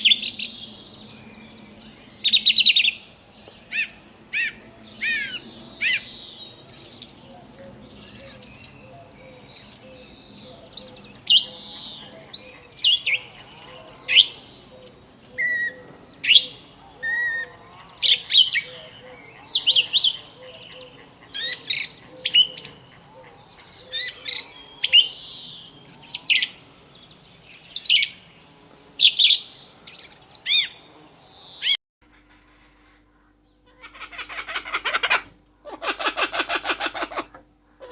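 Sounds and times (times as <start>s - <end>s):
bird chirping: 0.0s - 31.8s
faint low chatter: 8.8s - 23.9s.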